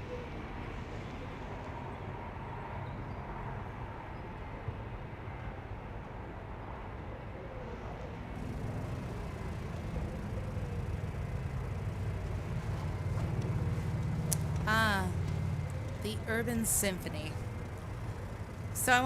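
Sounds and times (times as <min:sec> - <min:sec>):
engines running: 0:08.4 - 0:19.0
traffic rumble: 0:08.4 - 0:19.0.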